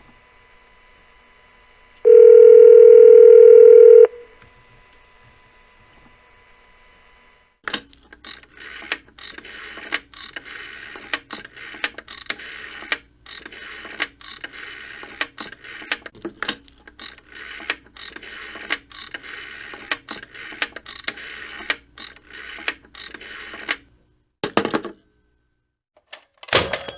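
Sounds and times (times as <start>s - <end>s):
faint dial tone: 2.1s - 4.3s
rotary dial ratcheting clicks: 7.7s - 23.8s.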